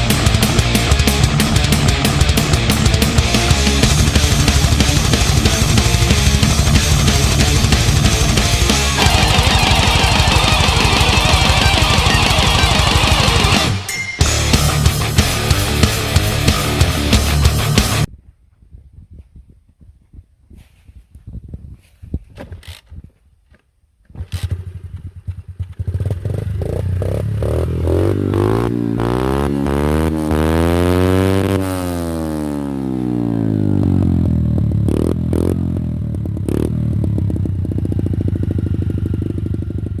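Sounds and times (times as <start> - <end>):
motocross bike engine running: 0.0 - 13.9, 24.2 - 31.6, 33.7 - 40.0.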